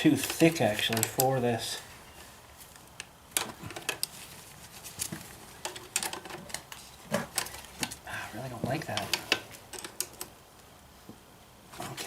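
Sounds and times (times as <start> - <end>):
wrenches clicking on metal nuts: 0.1 - 1.4.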